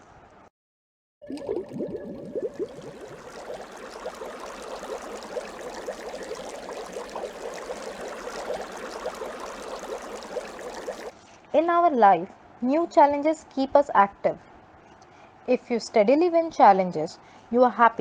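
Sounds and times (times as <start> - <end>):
water bubbling and trickling: 1.2 - 11.1.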